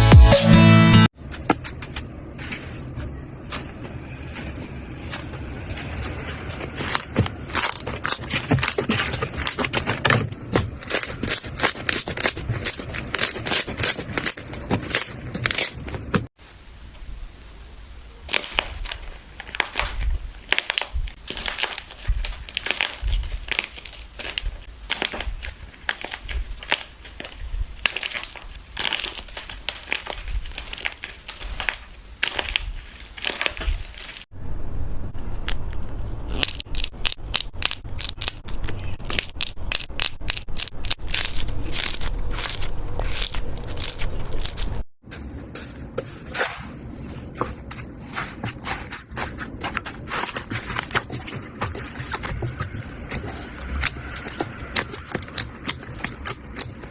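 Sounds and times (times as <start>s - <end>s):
slime crackling and popping: 6.8s - 16.2s, 18.2s - 34.3s, 36.3s - 44.9s, 48.1s - 56.9s.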